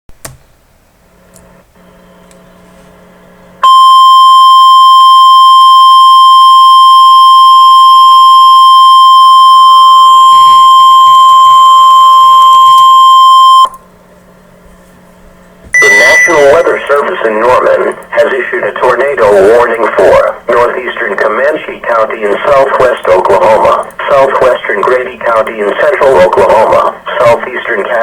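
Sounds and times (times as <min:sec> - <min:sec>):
high-pitched alarm tone: 0:03.6 - 0:13.7, 0:15.8 - 0:16.8.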